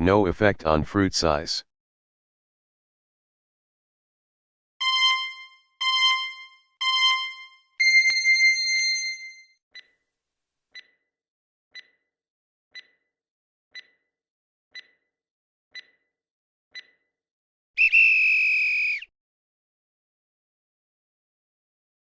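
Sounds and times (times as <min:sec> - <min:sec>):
short electronic beeps: 0:04.8 - 0:09.4
long high beep: 0:04.8 - 0:09.5
soft timer ticking: 0:09.8 - 0:10.0, 0:10.7 - 0:11.0, 0:11.7 - 0:12.1, 0:12.7 - 0:13.1, 0:13.7 - 0:14.1, 0:14.7 - 0:15.1, 0:15.7 - 0:16.1, 0:16.7 - 0:17.0.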